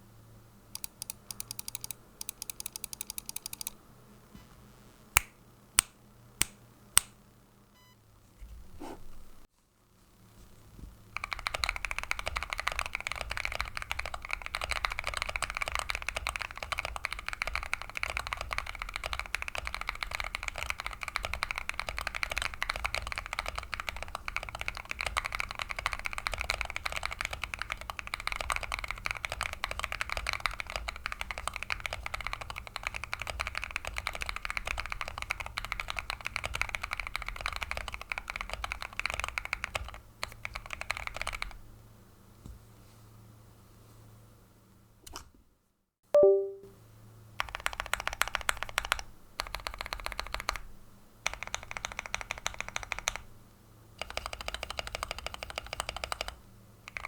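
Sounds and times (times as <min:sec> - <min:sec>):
mechanical keyboard typing: 0:00.8 - 0:03.8, 0:11.2 - 0:41.6, 0:47.4 - 0:53.3, 0:54.0 - 0:57.0.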